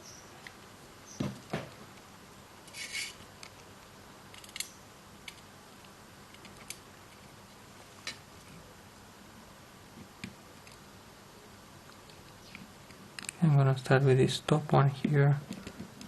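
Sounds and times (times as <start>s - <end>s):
small clicks: 11.9s - 13.4s.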